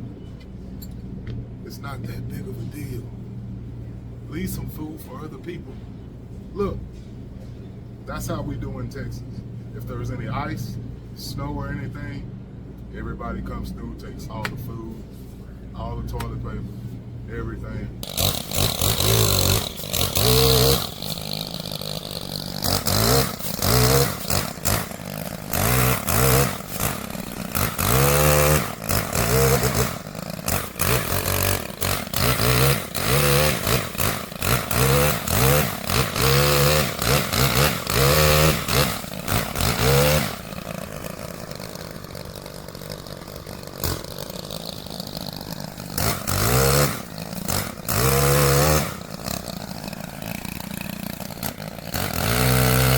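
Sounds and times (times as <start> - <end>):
chainsaw revving: 18.0 - 52.9.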